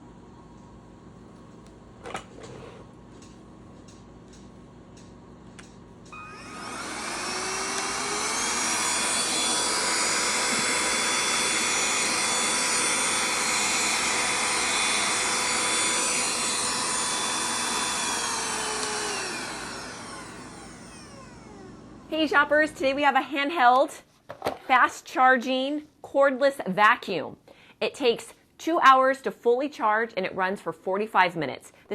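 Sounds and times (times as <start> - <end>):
cordless vacuum cleaner motor: 6.1 - 22.2.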